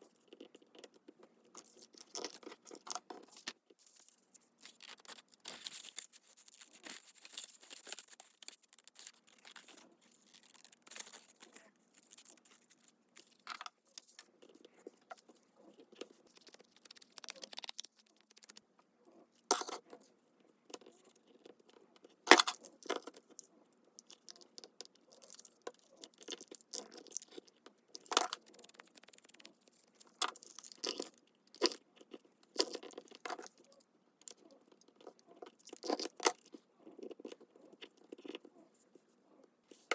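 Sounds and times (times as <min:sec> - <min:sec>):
paper rustling and tearing: 0:03.9 - 0:13.4.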